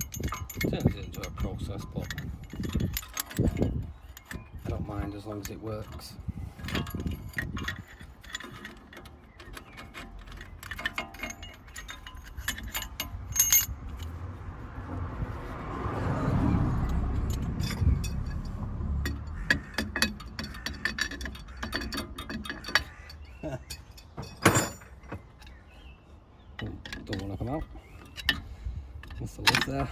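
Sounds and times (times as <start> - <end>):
metal tools clinking: 0.0 - 15.5, 16.2 - 29.9
low rumble: 12.2 - 19.5.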